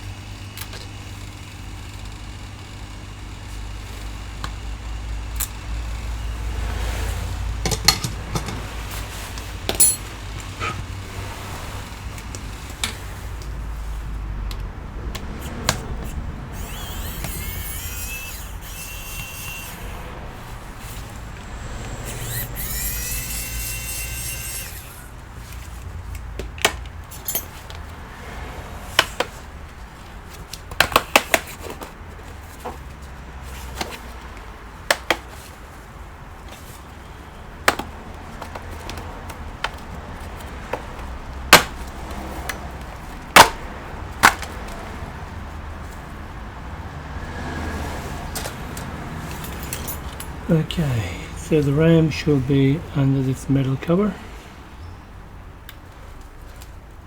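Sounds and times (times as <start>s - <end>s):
electric screwdriver whirring: 16.5s - 25.5s.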